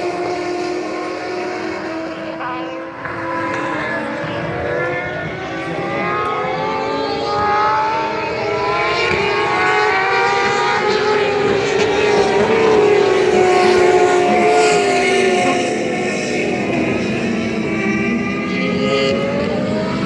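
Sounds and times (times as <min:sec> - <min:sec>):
race car engines: 0:00.0 - 0:20.0.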